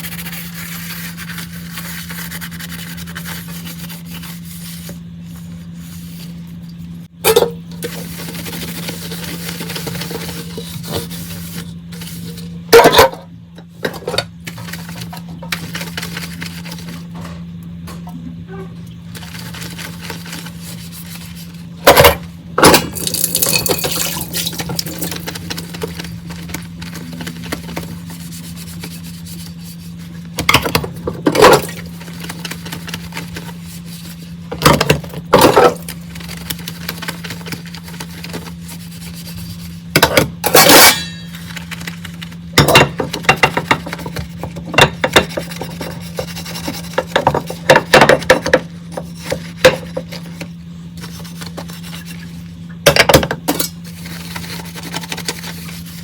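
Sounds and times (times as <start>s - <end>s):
low steady hum: 0.0s - 56.0s
dishes clattering in a sink: 7.2s - 8.0s, 12.7s - 14.3s, 42.6s - 45.9s, 52.8s - 53.8s.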